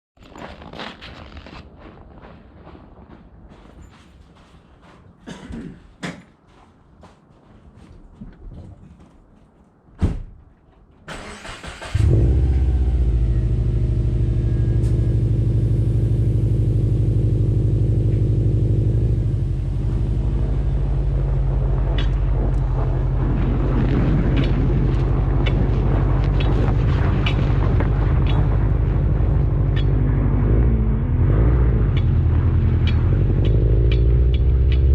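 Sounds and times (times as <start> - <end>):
car engine running: 11.9 - 34.9.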